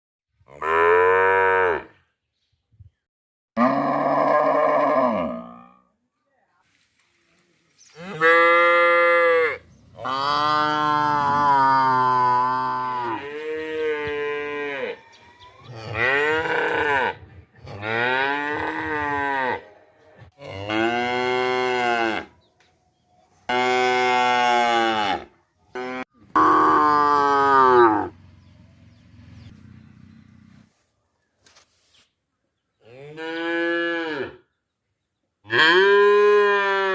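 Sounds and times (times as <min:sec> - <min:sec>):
cows mooing: 0:03.6 - 0:05.7, 0:08.1 - 0:19.7, 0:20.4 - 0:22.3, 0:23.5 - 0:28.2, 0:35.5 - 0:36.9.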